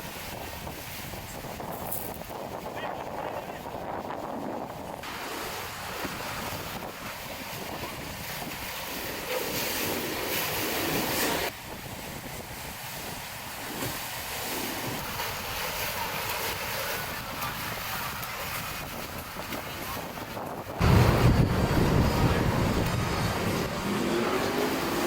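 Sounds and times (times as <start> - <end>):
rushing water from boats: 0.0 - 25.0
wind buffeting microphone: 0.0 - 25.0.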